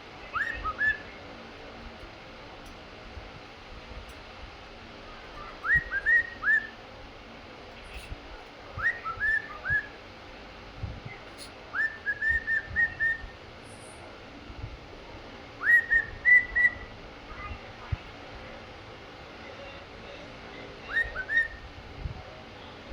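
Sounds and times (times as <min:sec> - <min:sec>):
cockatiel whistling: 0:00.3 - 0:01.1, 0:05.4 - 0:06.8, 0:08.8 - 0:10.0, 0:11.4 - 0:13.4, 0:15.6 - 0:16.9, 0:20.9 - 0:21.7.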